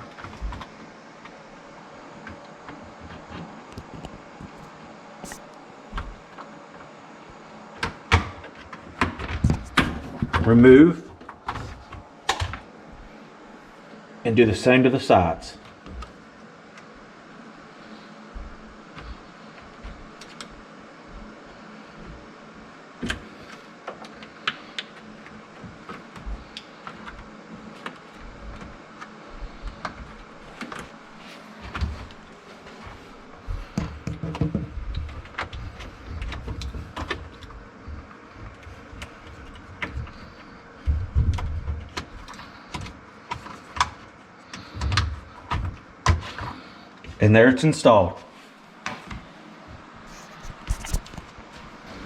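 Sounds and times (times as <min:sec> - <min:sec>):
utility knife cutting mat: 0:03.3 - 0:05.6, 0:50.1 - 0:51.3
clicks scrapes and knocks: 0:50.1 - 0:51.4.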